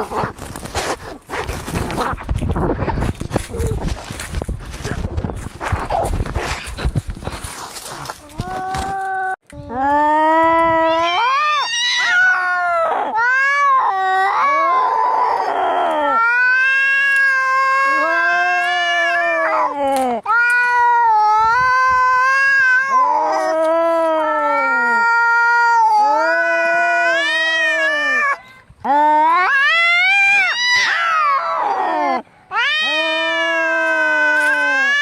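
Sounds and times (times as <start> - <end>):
cats yowling: 10.5 - 28.4, 29.0 - 35.0.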